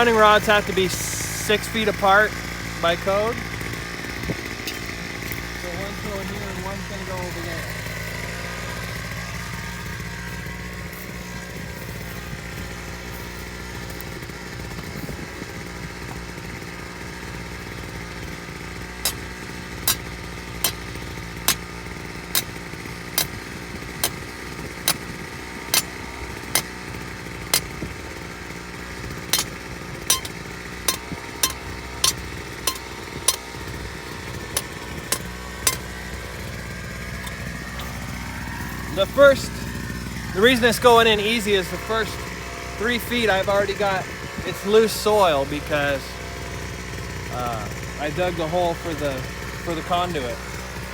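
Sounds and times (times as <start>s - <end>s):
jackhammer engine idling: 0.0s - 50.9s
sharp knocks: 29.4s - 33.4s, 34.6s - 35.9s.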